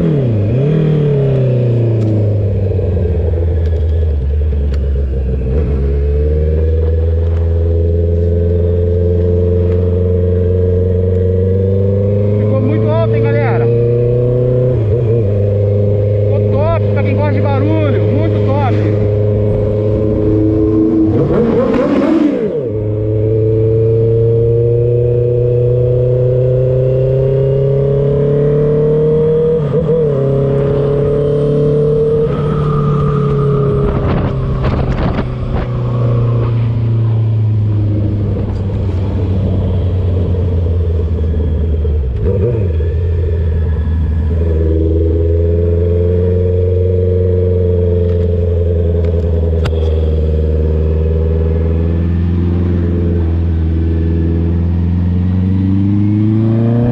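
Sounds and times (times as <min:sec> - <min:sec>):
loud motorcycle engine running: 0:33.7 - 0:56.9.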